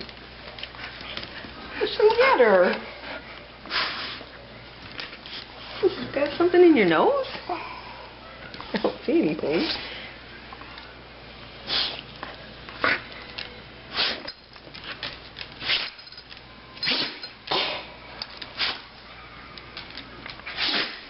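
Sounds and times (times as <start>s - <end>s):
dog sneezing: 3.7s - 4.2s, 11.6s - 12.0s, 13.9s - 14.3s, 15.6s - 16.0s, 16.8s - 17.9s, 18.6s - 18.9s, 20.5s - 21.0s.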